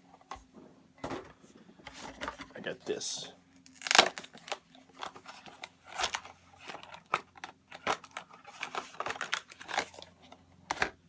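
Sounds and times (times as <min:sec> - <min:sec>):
plastic packaging crinkling: 0:03.6 - 0:10.2.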